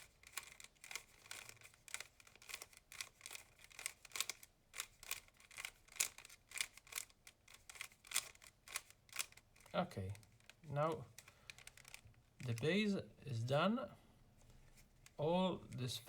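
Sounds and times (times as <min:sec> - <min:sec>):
puzzle cube turning clicks: 0:00.0 - 0:12.7.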